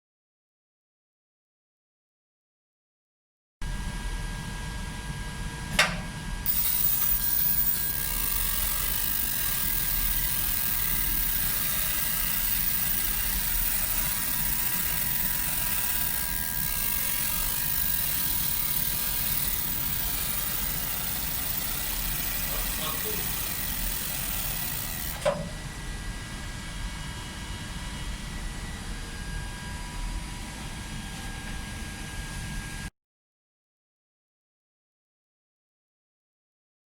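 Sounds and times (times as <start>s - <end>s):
laser engraver hiss and hum: 5.5s - 25.7s
sharp click: 5.7s - 7.9s, 24.9s - 25.5s
faint steady tones: 6.5s - 25.3s.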